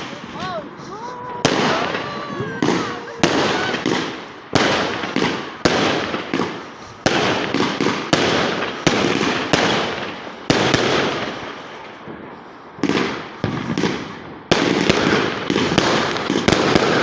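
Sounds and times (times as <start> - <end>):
firework hiss: 0.0 - 11.6
firework bangs: 0.0 - 17.0.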